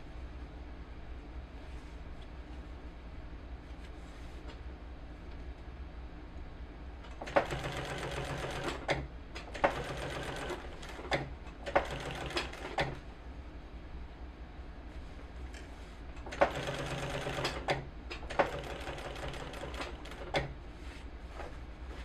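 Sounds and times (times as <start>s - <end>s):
sewing machine running: 7.2s - 13.0s, 16.3s - 20.5s.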